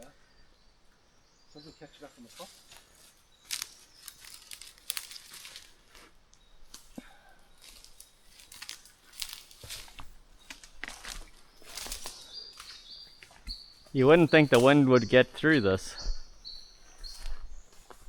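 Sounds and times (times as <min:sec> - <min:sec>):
leaves and twigs crackling underfoot: 0:02.0 - 0:18.0
twigs cracking: 0:02.3 - 0:14.8.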